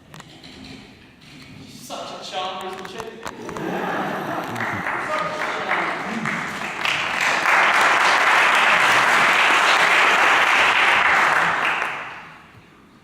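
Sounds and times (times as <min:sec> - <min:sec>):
audience applauding: 0:03.4 - 0:12.5.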